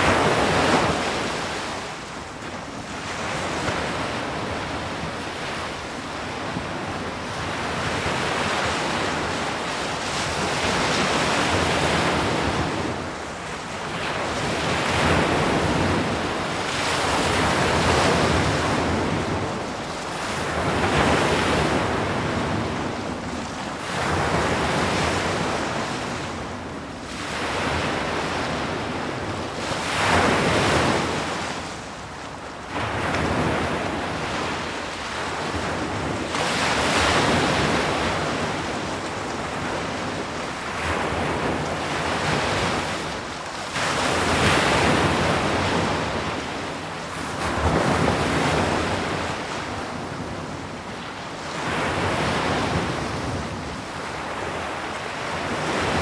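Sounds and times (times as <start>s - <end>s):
sea waves breaking on shore: 0.0s - 56.0s.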